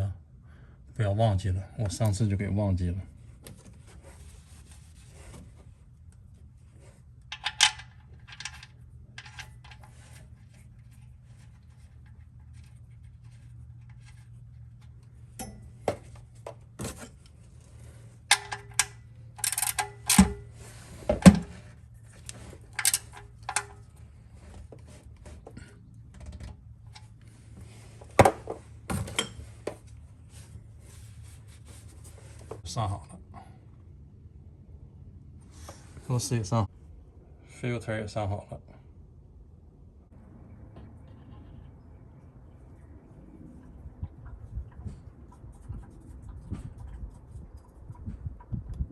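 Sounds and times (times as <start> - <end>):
steady low hum: 0.0 - 48.9
metal tools clinking: 7.3 - 10.2, 18.3 - 20.5, 22.3 - 23.9.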